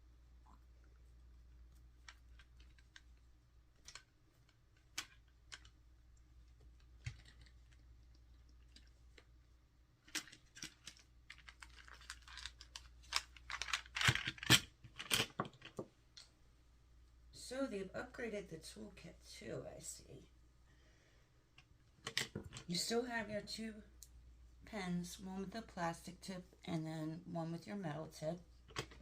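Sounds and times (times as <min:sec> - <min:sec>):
small tools clicking and clattering: 0:10.0 - 0:16.3.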